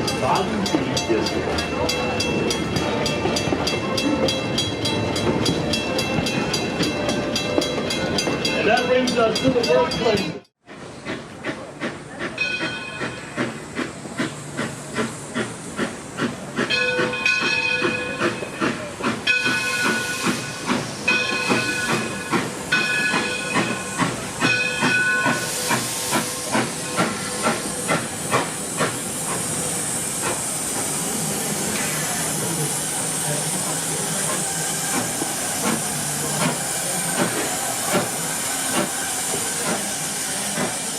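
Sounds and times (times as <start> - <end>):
steam locomotive exhaust beats: 0.0 - 40.9
strong steam hiss: 10.7 - 40.9.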